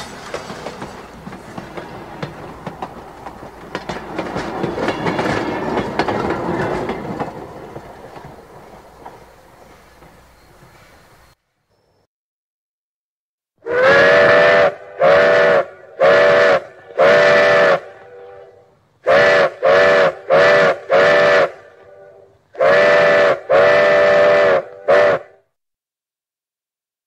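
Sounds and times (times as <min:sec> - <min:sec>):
steam locomotive whistle blasts: 0:04.2 - 0:07.3, 0:13.6 - 0:25.5.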